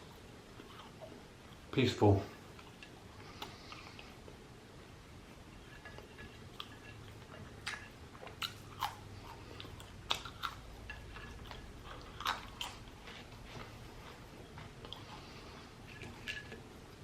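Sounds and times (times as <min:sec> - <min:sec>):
chewing crunchy food: 0:00.0 - 0:04.4, 0:05.2 - 0:17.0.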